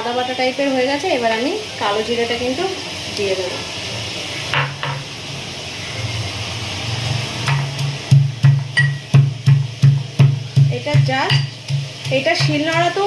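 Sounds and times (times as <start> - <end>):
pestle pounding in mortar: 7.5 - 13.0.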